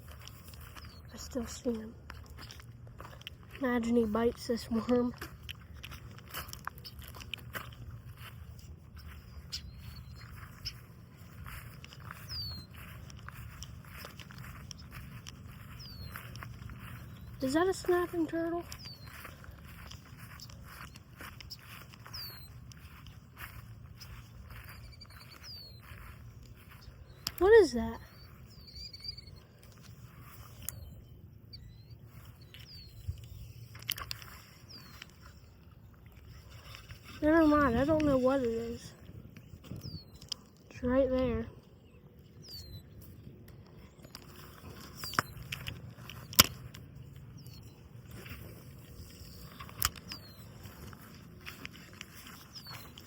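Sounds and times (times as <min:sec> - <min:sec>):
footsteps on a bank: 0:00.0 - 0:53.0
short high bird chirps: 0:09.1 - 0:35.4, 0:41.8 - 0:43.0, 0:52.1 - 0:53.0
wind rumble on microphone: 0:36.1 - 0:53.0
sharp clicks: 0:43.4 - 0:47.8.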